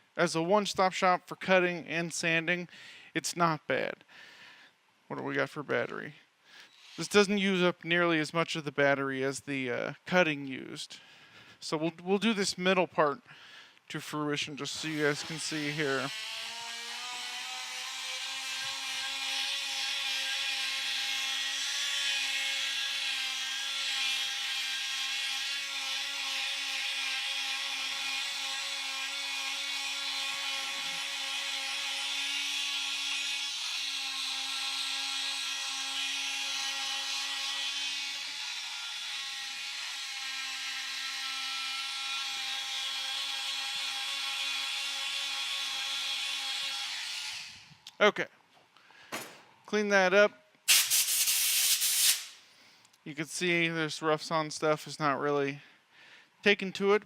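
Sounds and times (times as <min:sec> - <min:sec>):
sandpaper hissing on wood: 0:06.7 - 0:07.3, 0:14.8 - 0:16.1, 0:50.7 - 0:52.4
oscillating tool motor whine: 0:14.8 - 0:41.5.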